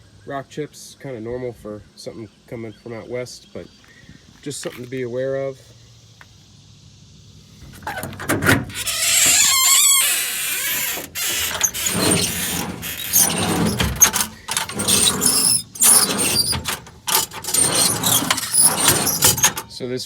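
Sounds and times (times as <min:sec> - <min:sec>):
metal drawers scraping and rattling: 0:07.6 - 0:19.8
metal on metal squeal: 0:07.8 - 0:19.7.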